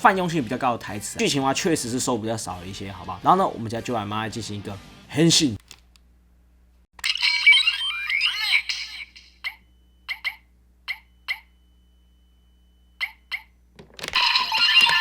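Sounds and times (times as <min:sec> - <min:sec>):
toy music and effects: 0:07.0 - 0:11.8, 0:12.9 - 0:15.0.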